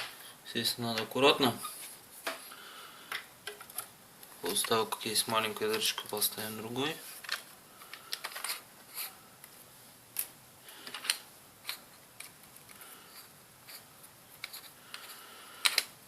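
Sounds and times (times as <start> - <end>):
small parts clicking and tapping: 7.2 - 9.1, 10.2 - 16.0.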